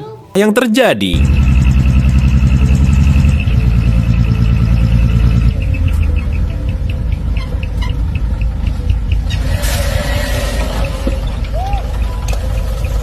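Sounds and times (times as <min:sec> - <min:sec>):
fast high ticking: 0:01.2 - 0:09.3
truck engine running: 0:01.2 - 0:13.0.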